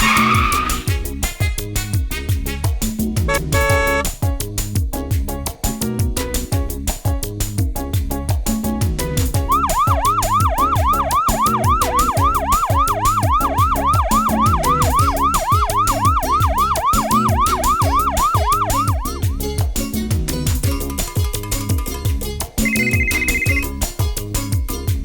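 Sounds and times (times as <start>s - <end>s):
electronic yelping siren: 0.0s - 0.9s, 9.4s - 19.2s, 22.7s - 23.7s
upbeat music with steady beat: 0.0s - 25.0s.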